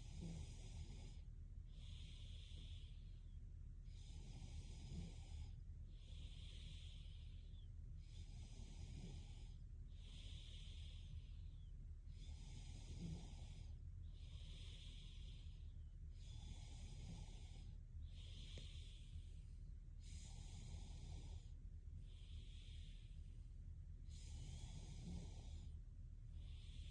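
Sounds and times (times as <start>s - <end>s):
faint low hum: 0.0s - 26.9s
woman breathing in sleep: 0.0s - 26.9s.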